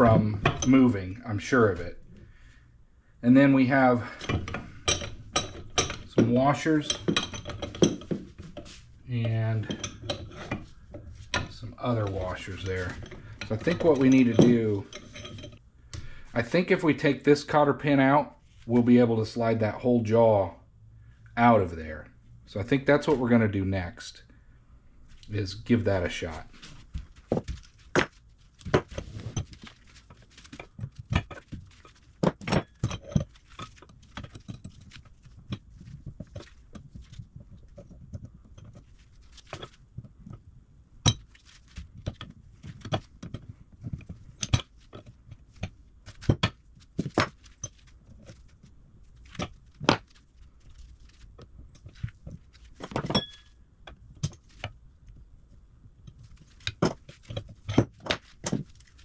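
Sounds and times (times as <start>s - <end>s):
metal tools clinking and knocking: 0.0s - 1.2s, 4.0s - 15.6s, 25.2s - 40.4s, 51.8s - 54.7s
short metallic rings: 53.1s - 53.6s.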